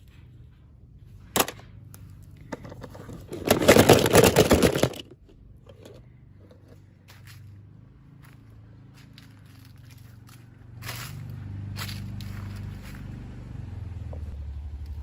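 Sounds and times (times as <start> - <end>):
toy packaging crackling clicks: 3.4 - 5.1.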